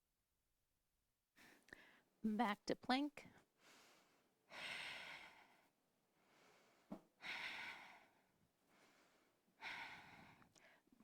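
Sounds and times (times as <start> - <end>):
woman breathing slowly: 1.4 - 2.1, 3.5 - 11.0.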